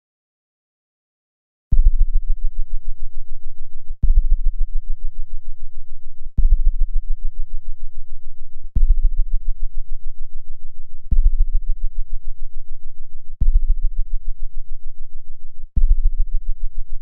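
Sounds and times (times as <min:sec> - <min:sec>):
deep electronic throbbing drone: 0:01.8 - 0:02.7, 0:13.4 - 0:14.3.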